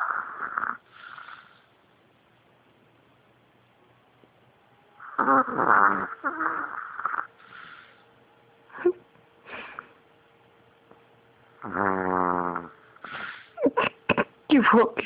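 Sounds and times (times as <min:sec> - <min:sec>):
dog snoring: 0:00.0 - 0:01.7, 0:05.0 - 0:08.0, 0:11.6 - 0:13.6.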